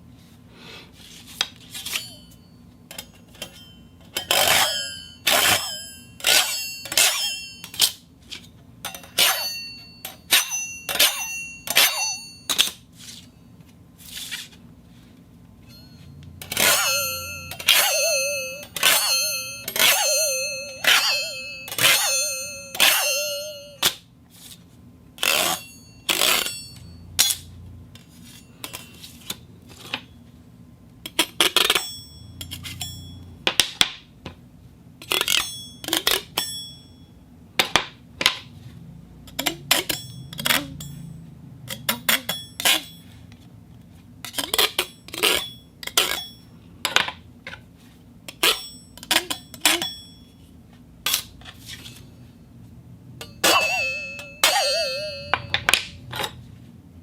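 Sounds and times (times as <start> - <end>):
metal plates clashing: 15.7 - 24.0, 53.2 - 56.4.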